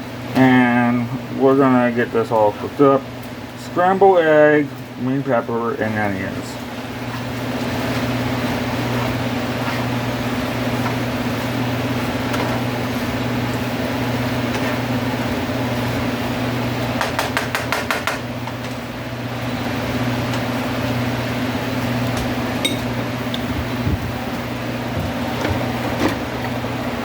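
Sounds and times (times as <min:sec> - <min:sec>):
steady low hum: 0:00.0 - 0:27.0
spatula knocking against pan: 0:17.0 - 0:18.2.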